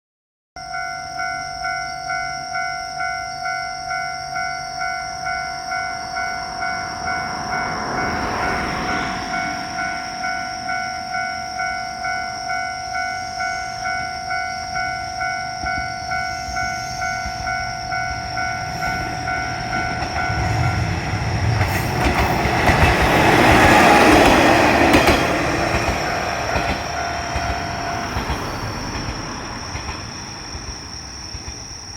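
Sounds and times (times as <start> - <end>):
level crossing warning bell: 0.6 - 30.2
diesel train engine: 0.8 - 31.9
train wheels clicking over rail joints: 15.6 - 31.9.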